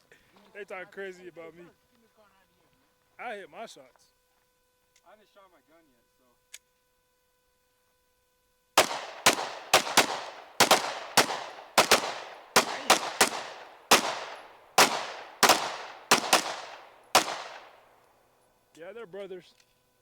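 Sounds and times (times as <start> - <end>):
rapid gunshots: 8.8 - 17.8.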